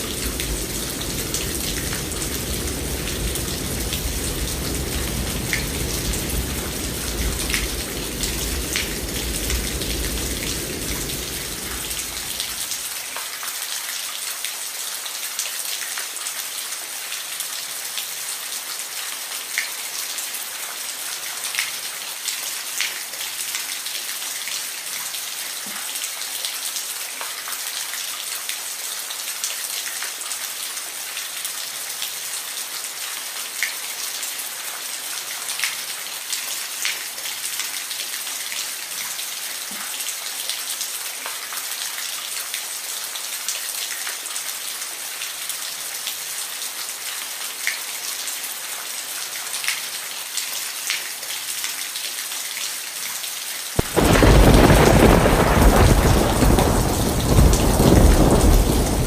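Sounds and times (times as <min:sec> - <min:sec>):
steady rain hiss: 0:00.0 - 0:59.0
raindrops tapping: 0:53.8 - 0:59.0.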